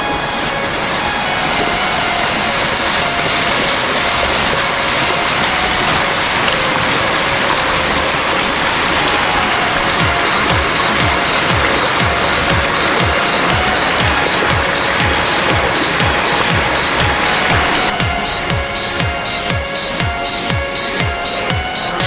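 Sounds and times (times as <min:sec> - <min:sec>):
stream water rushing: 0:00.0 - 0:22.0.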